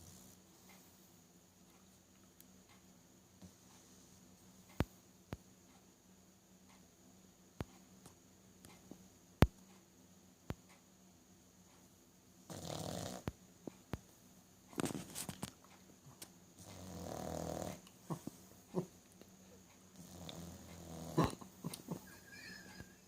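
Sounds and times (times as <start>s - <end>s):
dog snoring: 0.0s - 0.4s, 12.5s - 13.3s, 16.6s - 18.9s, 19.9s - 22.0s
small clicks and snuffles: 14.7s - 22.0s.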